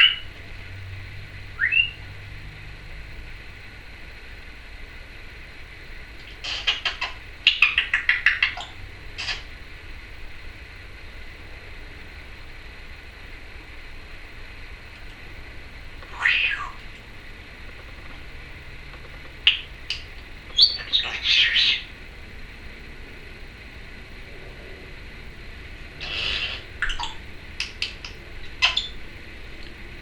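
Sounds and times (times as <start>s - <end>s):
parrot clicking and chattering: 6.2s - 9.5s, 26.0s - 29.0s
parrot call sliding down: 26.0s - 26.7s.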